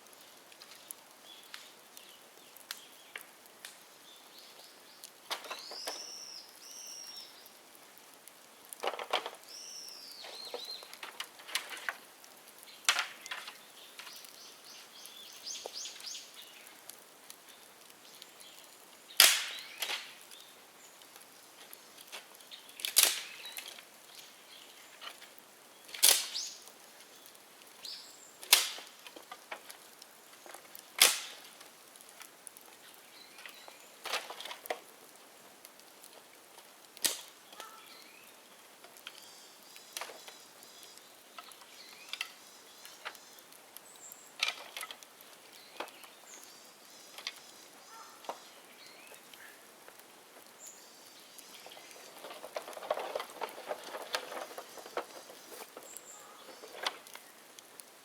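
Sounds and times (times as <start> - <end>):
bamboo popping in fire: 0.0 - 58.0
fire crackling: 0.0 - 58.0
distant birds calling: 9.2 - 12.0, 25.8 - 29.0, 45.4 - 49.7, 50.6 - 57.5.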